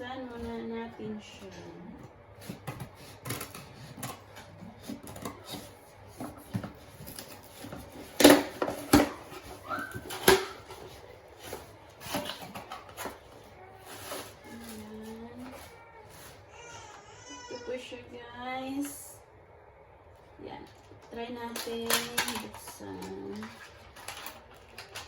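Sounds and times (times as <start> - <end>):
cardboard rustling and scraping: 2.4 - 16.7.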